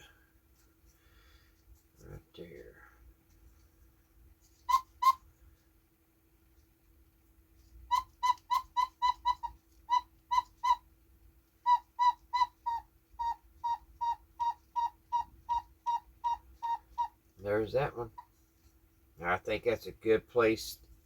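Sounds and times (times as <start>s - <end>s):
cuckoo clock whistle hooting: 7.9s - 10.8s, 11.7s - 17.1s.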